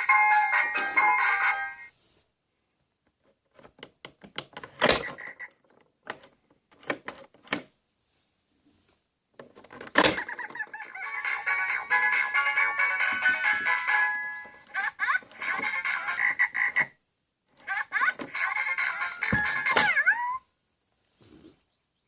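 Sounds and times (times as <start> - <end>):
jingle: 0.0 - 1.9, 11.0 - 14.7
music: 0.0 - 1.9, 10.8 - 14.7.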